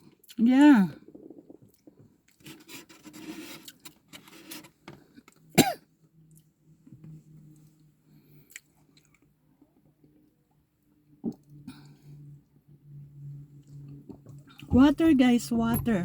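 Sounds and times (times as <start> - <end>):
steady low hum: 11.0 - 16.0.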